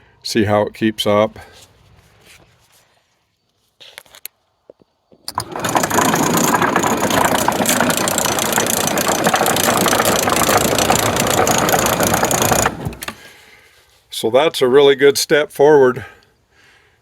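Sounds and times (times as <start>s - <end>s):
sawmill machinery rattling: 5.3s - 13.3s.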